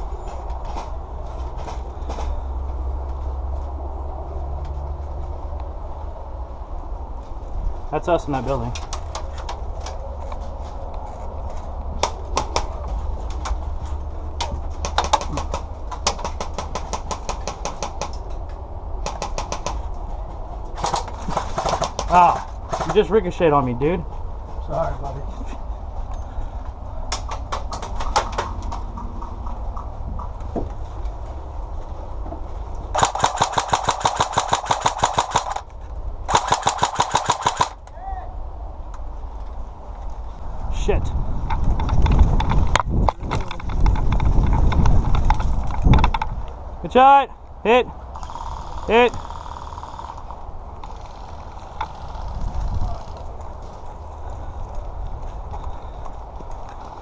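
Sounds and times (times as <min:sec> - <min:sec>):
airsoft guns firing: 0:14.8 - 0:18.2, 0:19.0 - 0:19.9, 0:20.8 - 0:23.1, 0:32.9 - 0:35.7, 0:36.3 - 0:37.8.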